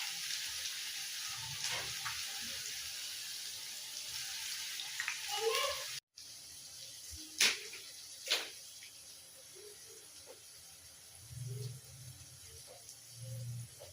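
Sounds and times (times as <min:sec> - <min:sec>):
tap water running: 0:00.0 - 0:09.1.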